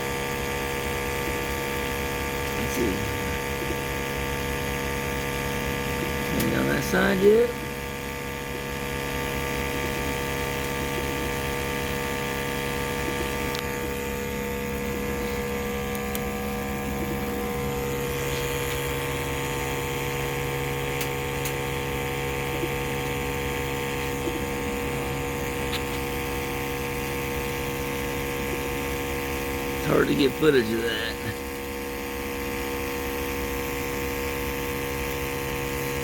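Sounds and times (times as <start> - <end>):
vehicle engine idling: 8.2 - 32.1.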